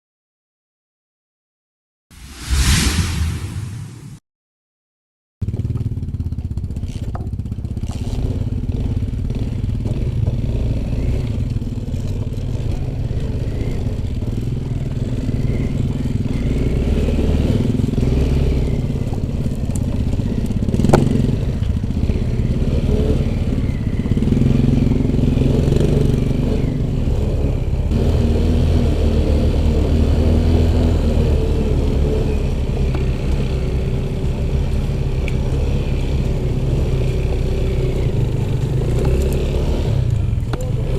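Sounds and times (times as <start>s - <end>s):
off-road motorcycle engine revving: 5.5s - 40.9s.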